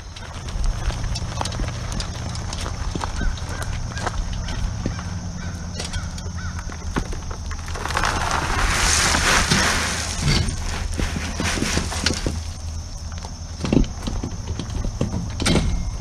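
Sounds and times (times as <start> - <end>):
gravel sliding and crunching: 0.0 - 16.0
stones clattering: 6.6 - 14.0.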